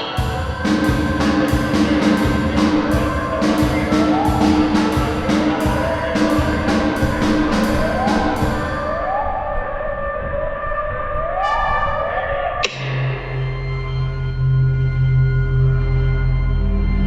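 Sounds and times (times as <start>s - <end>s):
experimental electronic music: 0.0s - 17.0s
sustained low drone: 0.0s - 17.0s
percussive pulse: 12.6s - 14.7s.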